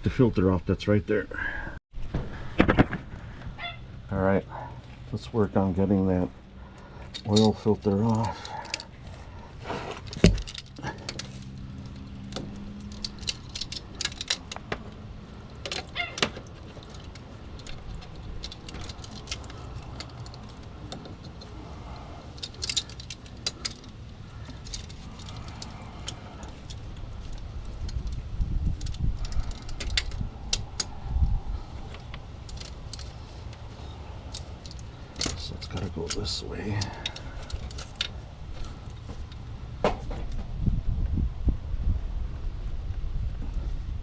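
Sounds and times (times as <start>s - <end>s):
metal hand tools clinking: 7.1s - 9.0s, 10.0s - 14.7s
heavy low bumps: 16.3s - 44.0s.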